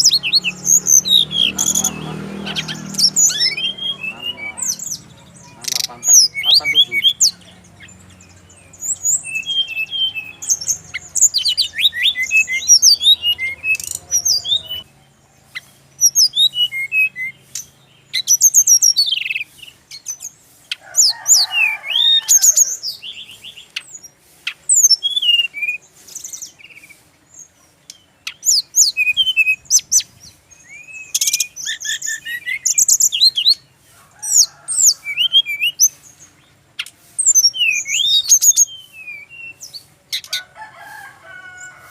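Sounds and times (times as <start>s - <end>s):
bird singing whistled chirps: 0.0s - 14.9s, 15.5s - 20.2s, 24.7s - 27.0s, 27.9s - 33.6s, 37.2s - 39.8s.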